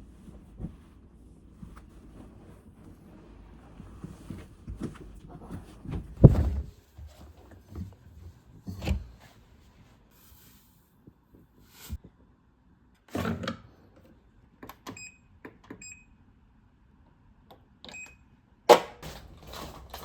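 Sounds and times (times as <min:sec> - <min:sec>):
household knocks and thumps: 0:04.0 - 0:09.1.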